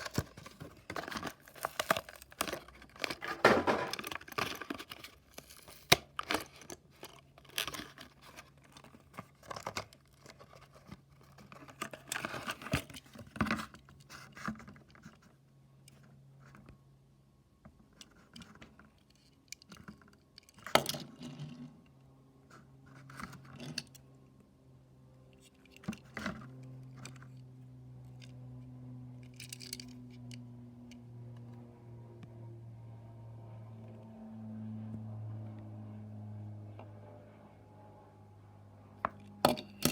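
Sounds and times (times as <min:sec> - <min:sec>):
plastic packaging crinkling and tearing: 0:00.0 - 0:13.0
low steady hum: 0:00.0 - 0:39.9.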